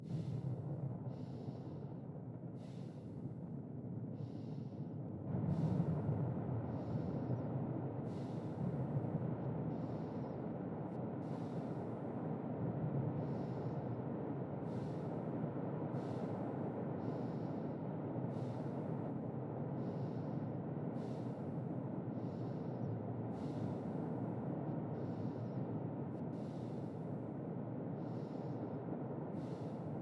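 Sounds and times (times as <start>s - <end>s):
man breathing in sleep: 2.6s - 3.3s, 8.1s - 8.8s, 11.2s - 12.1s, 14.6s - 15.3s, 15.9s - 19.2s, 19.8s - 25.6s, 26.3s - 27.3s, 28.0s - 30.0s.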